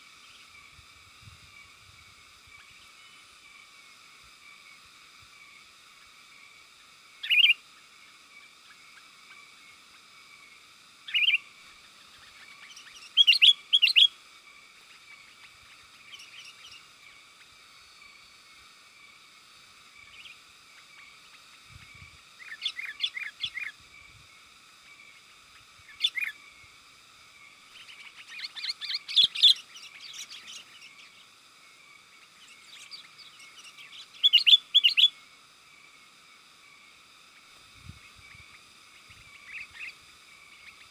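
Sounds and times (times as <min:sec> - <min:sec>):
steady high hiss: 0:00.0 - 0:40.9
bird chirping calls: 0:07.2 - 0:07.6, 0:11.1 - 0:14.2, 0:20.0 - 0:24.2, 0:24.9 - 0:26.4, 0:27.7 - 0:31.3, 0:32.3 - 0:35.2.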